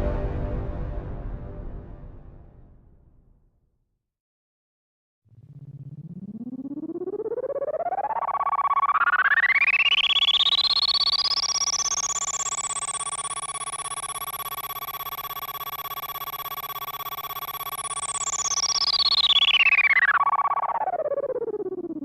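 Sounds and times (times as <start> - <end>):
synthesized tone sweeping up and down: 5.3 - 22.0
steady fluttering mid-pitched tone: 5.4 - 22.0.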